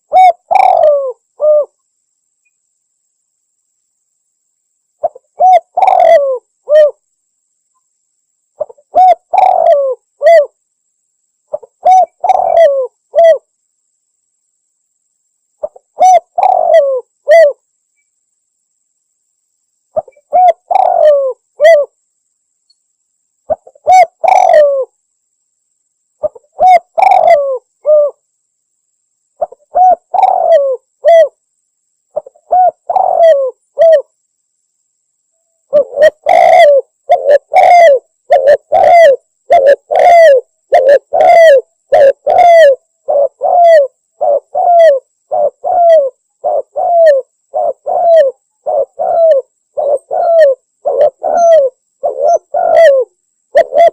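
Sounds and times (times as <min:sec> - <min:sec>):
dove cooing: 0:00.0 - 0:01.8, 0:05.0 - 0:07.0, 0:08.6 - 0:10.6, 0:11.5 - 0:13.5, 0:15.6 - 0:17.6, 0:20.0 - 0:22.0, 0:23.5 - 0:25.0, 0:26.2 - 0:28.2, 0:29.4 - 0:31.4, 0:32.2 - 0:34.2, 0:35.7 - 0:53.9.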